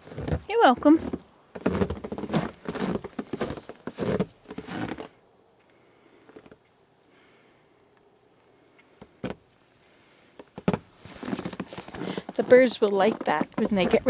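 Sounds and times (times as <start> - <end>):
footsteps crunching through snow: 0.0 - 5.2, 10.7 - 14.0.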